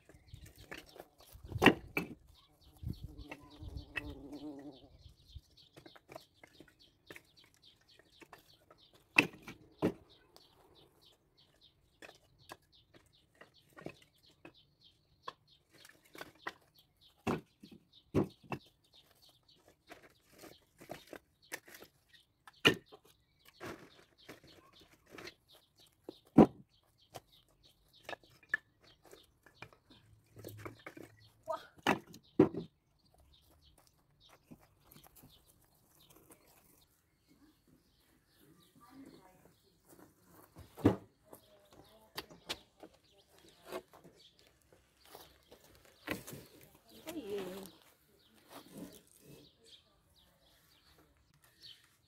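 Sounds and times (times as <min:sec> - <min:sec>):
wooden logs clunking: 0:05.7 - 0:10.2, 0:15.3 - 0:32.8.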